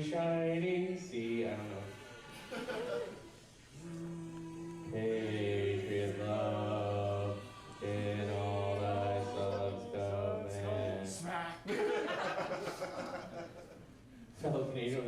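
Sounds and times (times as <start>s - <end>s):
men singing in monotone: 3.8s - 11.3s.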